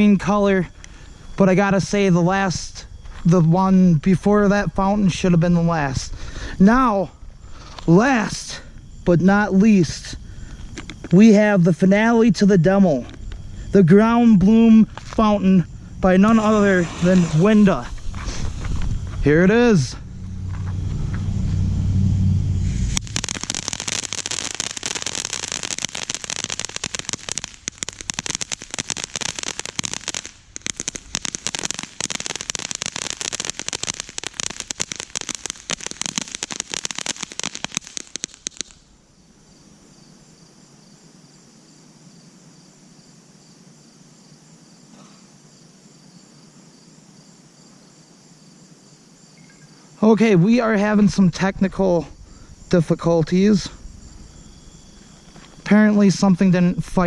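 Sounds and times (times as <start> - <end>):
crickets chirping: 0.0 - 57.0
firework fountain crackling: 13.0 - 21.7, 22.6 - 39.0.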